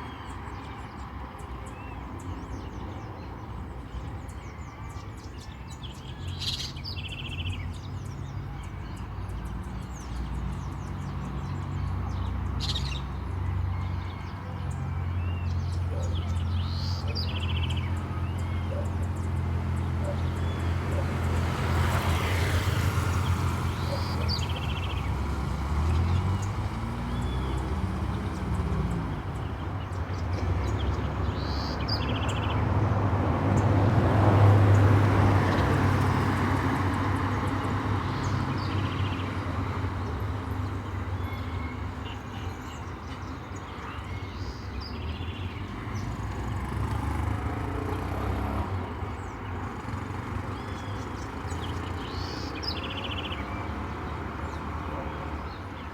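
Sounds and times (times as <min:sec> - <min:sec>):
birds chirping: 0:00.0 - 0:55.9
street traffic: 0:00.0 - 0:55.9
vehicle passing: 0:09.4 - 0:42.0, 0:44.8 - 0:55.8.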